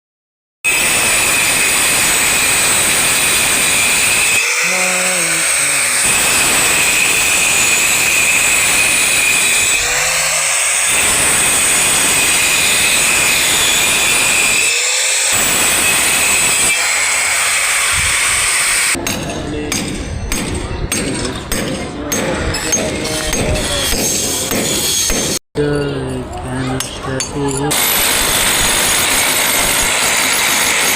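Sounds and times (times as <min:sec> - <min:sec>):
power tool whining: 0:00.7 - 0:19.0.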